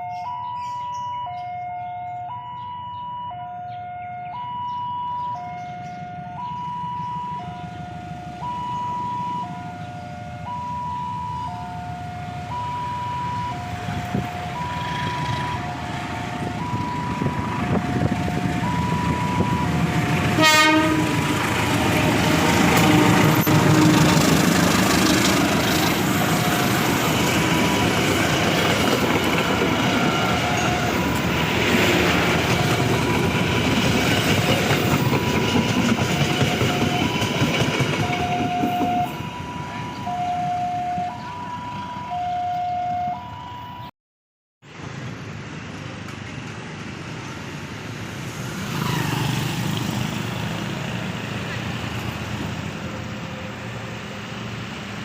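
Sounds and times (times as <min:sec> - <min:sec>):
two-tone electronic warning alarm: 0:00.0 - 0:21.4, 0:25.4 - 0:31.8, 0:35.0 - 0:43.9
train rumbling past: 0:05.6 - 0:43.2, 0:44.7 - 0:55.0.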